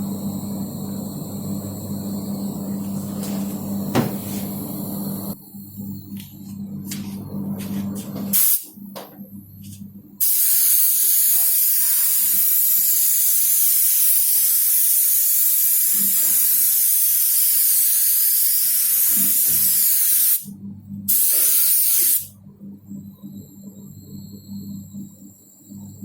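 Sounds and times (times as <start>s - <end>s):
paint spraying hiss: 10.2s - 20.5s, 21.1s - 22.3s.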